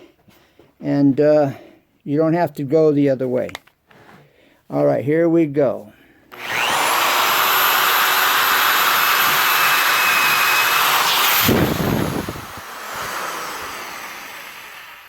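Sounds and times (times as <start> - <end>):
electric drill boring through wood: 6.3 - 15.0.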